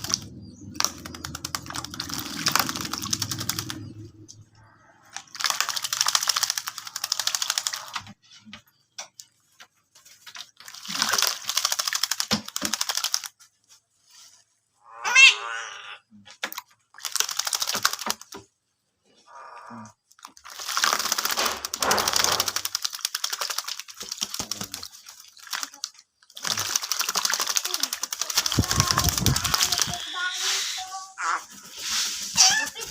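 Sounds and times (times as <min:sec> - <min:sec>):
bird wings splashing in water: 0:00.0 - 0:03.9, 0:05.2 - 0:08.0, 0:10.0 - 0:13.2, 0:16.5 - 0:18.4, 0:20.2 - 0:30.0.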